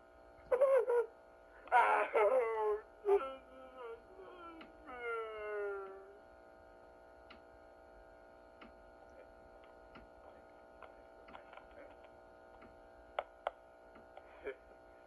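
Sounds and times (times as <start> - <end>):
faint steady hum: 0.0 - 15.0
faint clicks and ticks: 7.2 - 7.6, 8.5 - 14.3.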